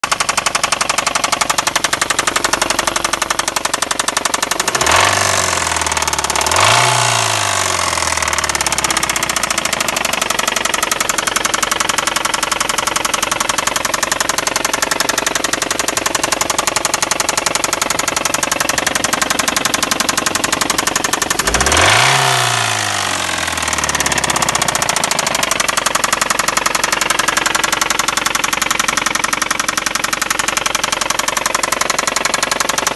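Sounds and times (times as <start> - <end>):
car engine idling: 0.0 - 32.9
rapid engine knock: 0.0 - 32.9
engine revving: 4.2 - 12.7, 14.3 - 30.2.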